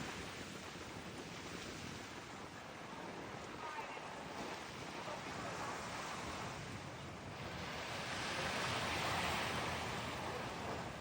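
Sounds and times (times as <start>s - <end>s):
ocean surf breaking: 7.4s - 11.0s.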